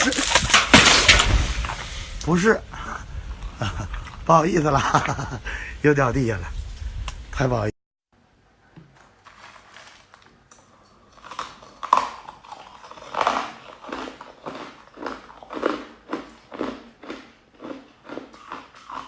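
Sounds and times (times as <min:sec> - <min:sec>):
ice being chewed: 0:08.9 - 0:19.0.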